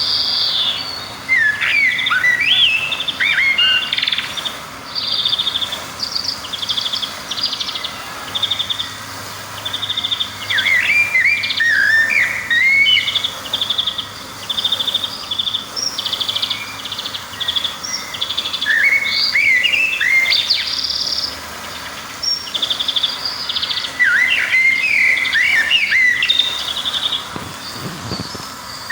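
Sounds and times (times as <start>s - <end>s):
songbird trills: 0.0s - 28.9s
warbled swooping bird whistles: 0.0s - 28.9s.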